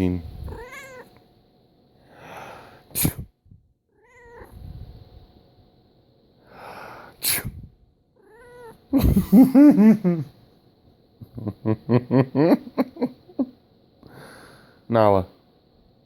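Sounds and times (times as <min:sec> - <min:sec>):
cat meowing: 0:00.5 - 0:01.1, 0:04.0 - 0:04.5, 0:08.2 - 0:08.8
person sneezing: 0:02.9 - 0:03.3, 0:07.2 - 0:07.6.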